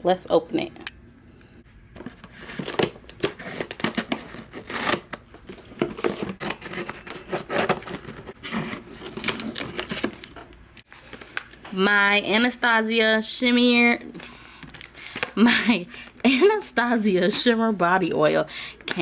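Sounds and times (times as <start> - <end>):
packaging crinkling and tearing: 2.0 - 11.5.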